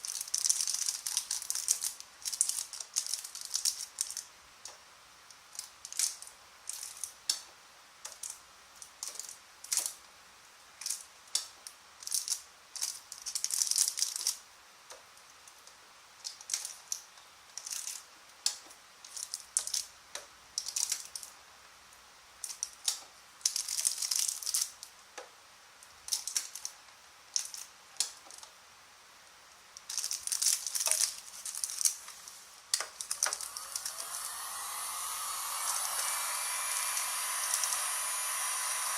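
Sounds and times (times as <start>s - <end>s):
plastic bag crinkling: 0.0s - 4.3s, 29.8s - 34.4s
steady hiss: 0.0s - 38.9s.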